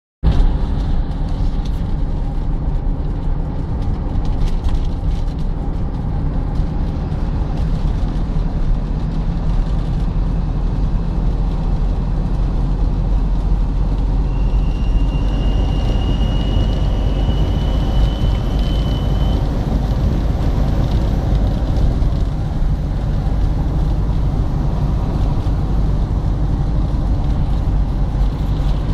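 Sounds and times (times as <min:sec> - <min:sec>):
vehicle road noise: 0:00.2 - 0:28.9
thin high drivetrain whistle: 0:14.2 - 0:19.5.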